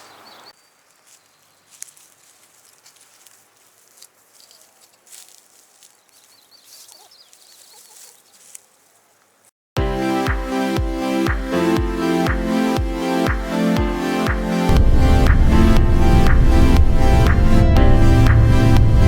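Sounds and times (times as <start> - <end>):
faint high bird chirps: 6.0 - 8.4.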